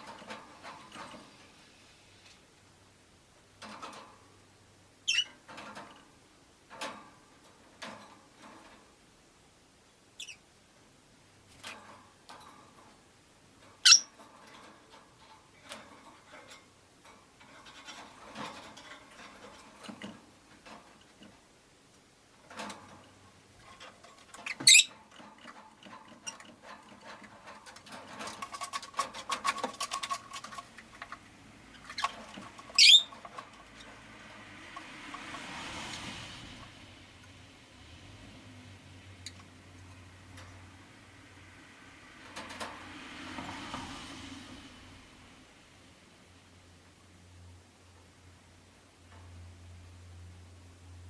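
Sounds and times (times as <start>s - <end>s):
rustling in cage: 0.0s - 51.0s
lovebirds chirping: 13.8s - 14.1s, 32.8s - 33.1s.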